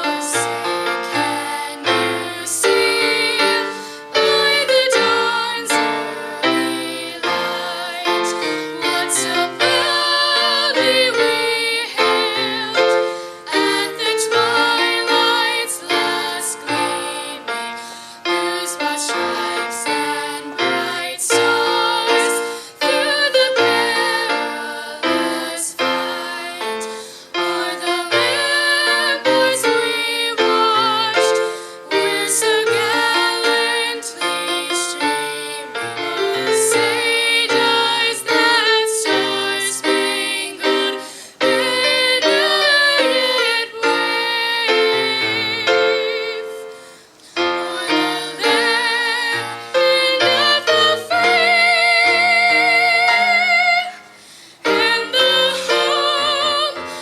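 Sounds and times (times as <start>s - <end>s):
person singing with vibrato: 0.0s - 57.0s
piano accompaniment: 0.0s - 57.0s.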